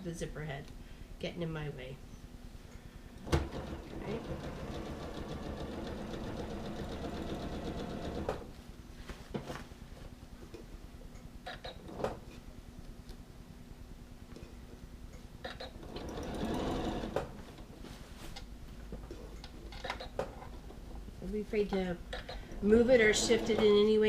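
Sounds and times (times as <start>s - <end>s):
sewing machine stitching: 3.4s - 8.4s, 15.8s - 17.2s, 23.0s - 23.8s
fabric rustling: 17.4s - 18.8s.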